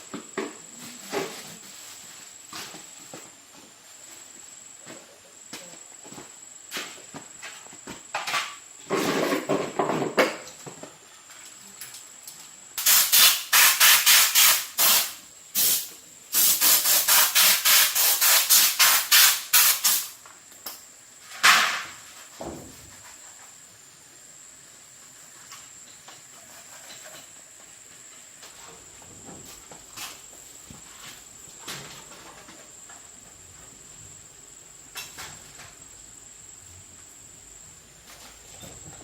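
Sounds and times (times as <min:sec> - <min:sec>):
short hissing bursts: 0:12.8 - 0:20.2.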